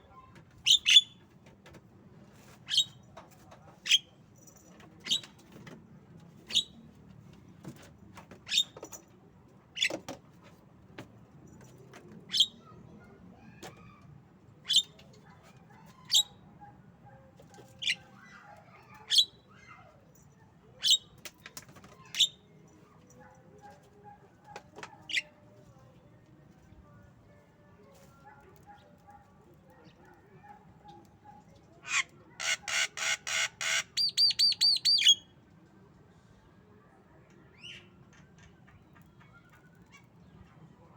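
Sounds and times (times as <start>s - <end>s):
soft bird chattering: 0.6s - 1.2s, 14.7s - 15.0s, 31.8s - 35.3s.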